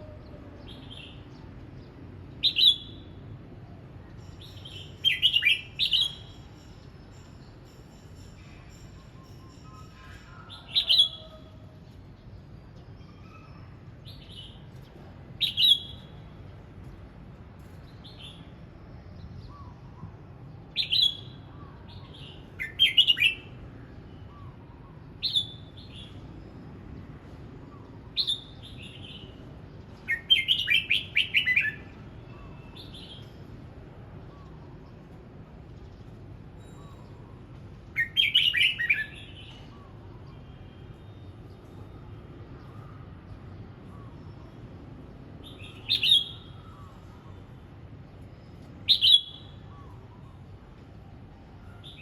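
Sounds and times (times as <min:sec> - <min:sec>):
bird singing whistled phrases: 0:02.4 - 0:03.1, 0:04.7 - 0:06.3, 0:15.4 - 0:16.2, 0:20.8 - 0:21.8, 0:28.2 - 0:29.1, 0:38.0 - 0:40.0, 0:45.6 - 0:47.0, 0:48.8 - 0:50.4.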